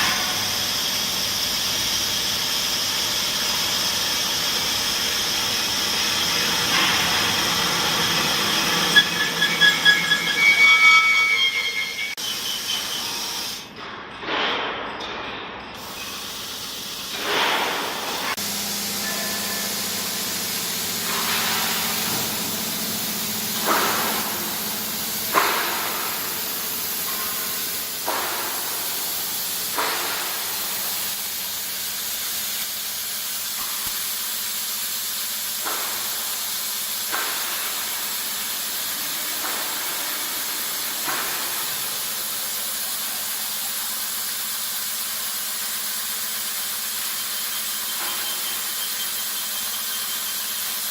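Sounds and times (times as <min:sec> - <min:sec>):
machine steady hiss: 0:00.0 - 0:13.7, 0:15.8 - 0:50.9
short sharp machine squeals: 0:06.0 - 0:13.7, 0:47.0 - 0:50.9.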